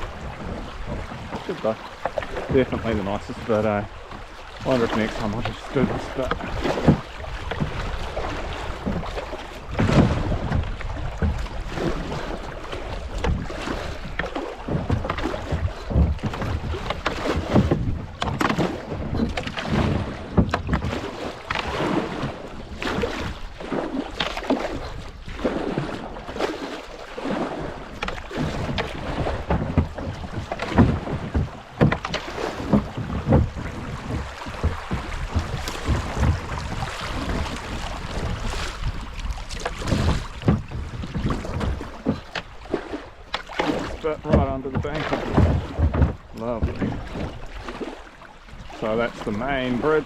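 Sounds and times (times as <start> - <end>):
paddle strokes and splashing: 0.0 - 50.0
running water: 0.0 - 50.0
knocks on kayak: 4.6 - 12.2, 13.2 - 23.4, 28.0 - 47.9
wind on microphone: 27.3 - 42.3.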